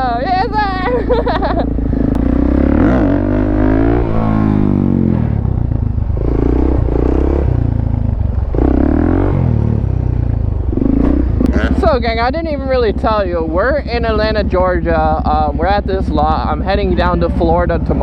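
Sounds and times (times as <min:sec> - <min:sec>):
dirt bike engine revving: 0:00.0 - 0:18.0.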